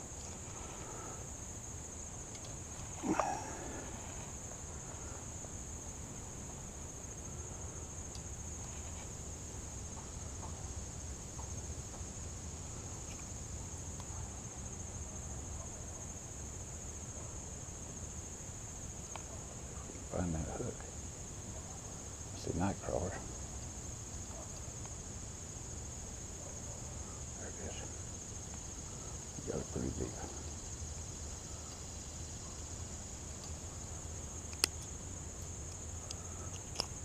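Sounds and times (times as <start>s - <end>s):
insect chorus buzzing: 0.0s - 37.0s.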